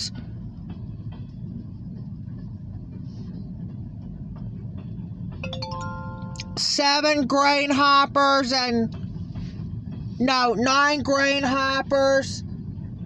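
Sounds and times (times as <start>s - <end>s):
freight train rolling rumble: 0.0s - 13.0s
chord of steady tones: 5.4s - 7.0s.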